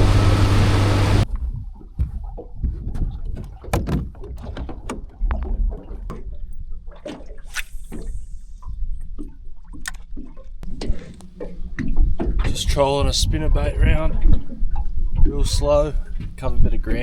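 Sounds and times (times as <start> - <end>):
boat knocking and splashing: 0.0 - 8.1, 8.7 - 17.0
low rumble: 10.6 - 17.0.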